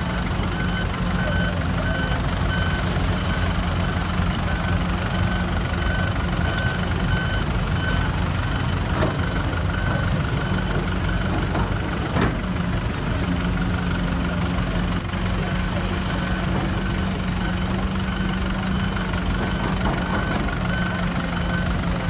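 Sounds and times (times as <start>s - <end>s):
diesel machinery running: 0.0s - 22.0s
backup alarm beeping: 0.1s - 11.6s, 16.2s - 22.0s.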